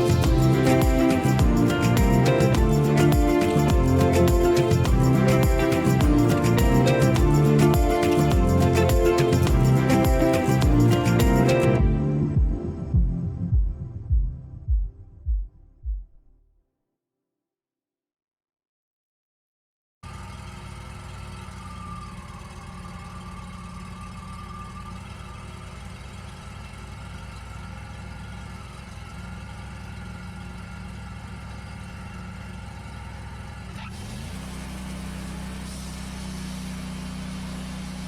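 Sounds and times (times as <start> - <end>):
sawmill engine running: 0.0 - 11.8.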